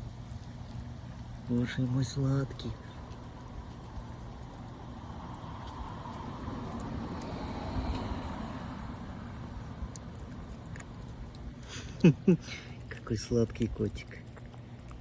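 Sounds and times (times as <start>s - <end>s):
car passing: 4.8s - 10.4s.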